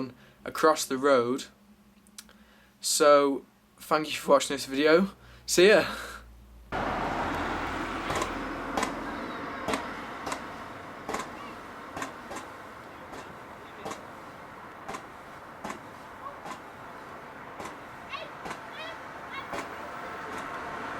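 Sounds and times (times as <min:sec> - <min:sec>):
fireworks cracking: 0:06.8 - 0:20.7.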